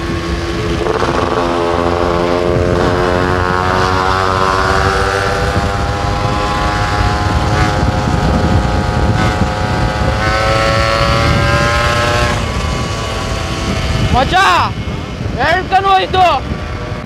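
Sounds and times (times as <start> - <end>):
motorcycle engine running: 0.0 - 17.0
wind rumble on microphone: 0.0 - 17.0.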